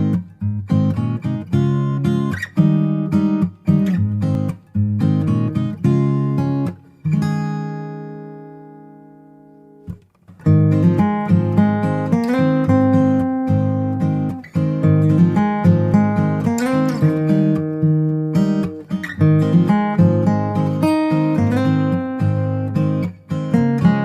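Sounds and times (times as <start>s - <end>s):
acoustic guitar strumming chords: 0.0s - 24.0s.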